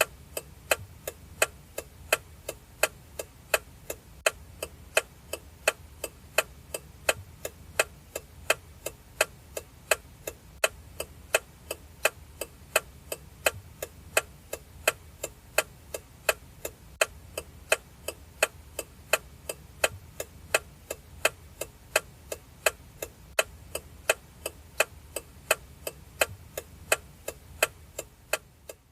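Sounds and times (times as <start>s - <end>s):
car turn signal clicking: 0.0s - 28.9s.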